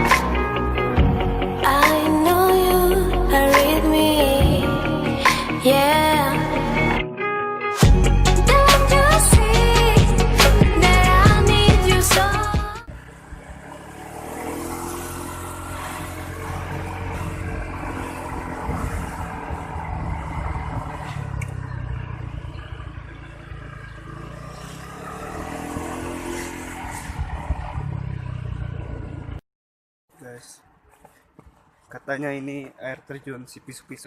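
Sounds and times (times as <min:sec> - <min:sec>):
vehicle engine running: 0:07.8 - 0:26.2.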